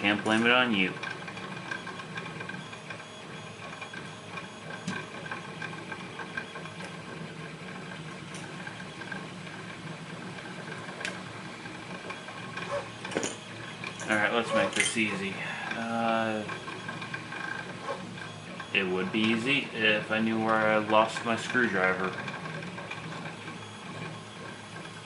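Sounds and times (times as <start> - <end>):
mechanical hum: 0.0 - 25.0.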